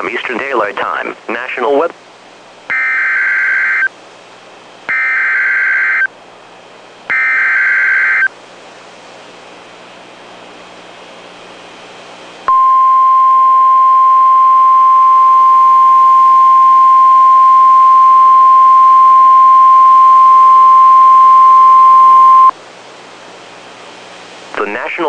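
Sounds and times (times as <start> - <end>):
faint radio hiss: 0.0 - 2.3, 22.0 - 25.0
steady warning alarm beep: 2.7 - 3.9, 4.9 - 6.1, 7.1 - 8.3, 12.5 - 22.5.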